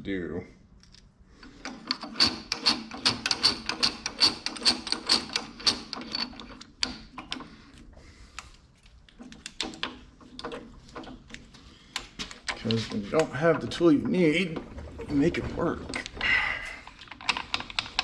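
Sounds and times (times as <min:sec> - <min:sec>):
sharp clicking at drill press: 0:01.5 - 0:07.5.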